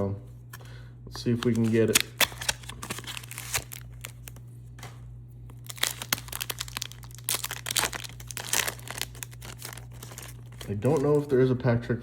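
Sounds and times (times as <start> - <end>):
steady low hum: 0.0 - 12.0
packaging being torn open: 1.4 - 4.4, 5.6 - 11.3.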